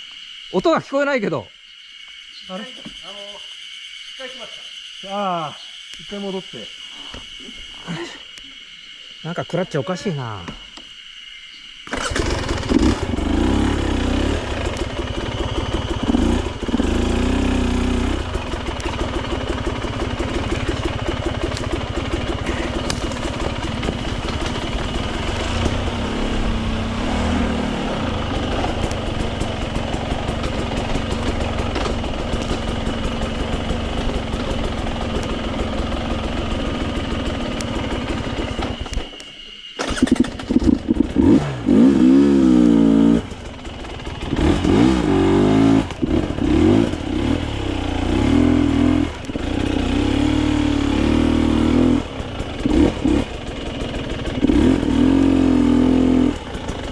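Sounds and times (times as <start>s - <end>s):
dirt bike engine revving: 11.9s - 38.9s, 39.8s - 56.9s.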